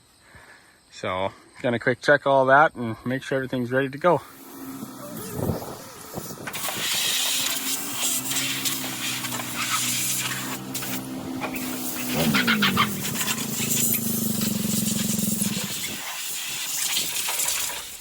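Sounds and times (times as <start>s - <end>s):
truck engine running: 4.1s - 16.4s.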